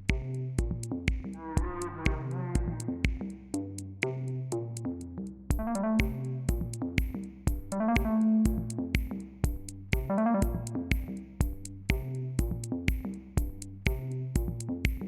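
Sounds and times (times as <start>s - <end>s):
drum machine beat: 0.0s - 4.8s, 5.5s - 15.0s
bass: 0.0s - 15.0s
synthesizer melody: 5.6s - 6.7s, 7.7s - 8.8s, 10.0s - 10.9s.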